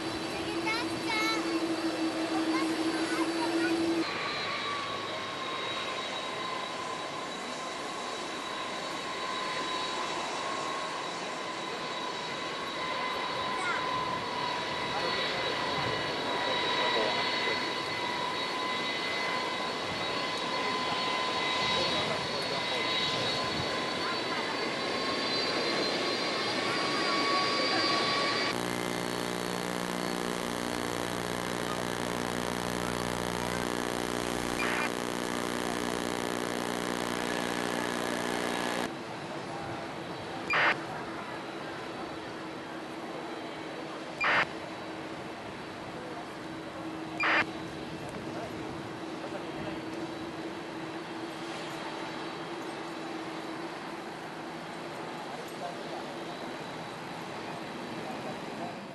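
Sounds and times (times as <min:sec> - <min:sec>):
jet engines whining: 0:00.0 - 0:21.3, 0:23.1 - 0:38.9, 0:40.4 - 0:40.8, 0:44.0 - 0:44.5, 0:46.9 - 0:47.4
electrical hum: 0:28.4 - 0:38.9, 0:40.5 - 0:40.8, 0:44.2 - 0:44.4, 0:47.2 - 0:47.4.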